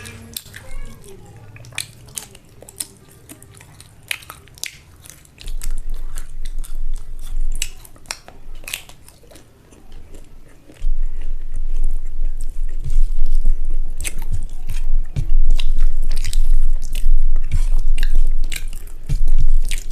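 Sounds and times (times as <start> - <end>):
person chewing food: 0.0 - 19.9
wet mouth clicks: 0.0 - 19.9
low rumbling: 10.0 - 19.9.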